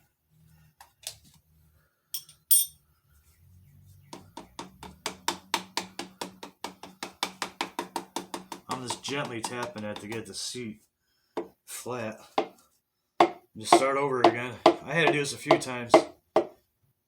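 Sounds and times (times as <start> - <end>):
sharp ringing metal clink: 2.2 - 2.8.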